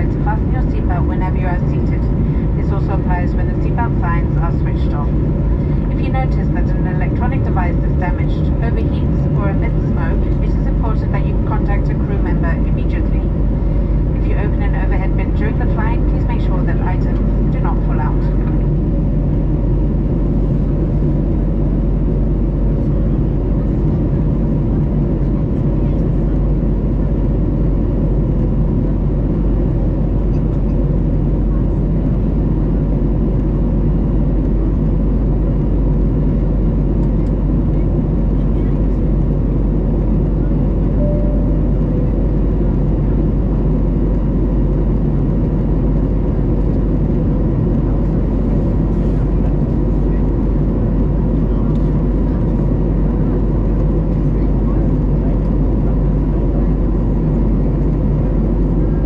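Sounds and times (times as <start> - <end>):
faint steady hum: 0.0 - 22.1
airplane cabin engine noise: 0.0 - 59.0.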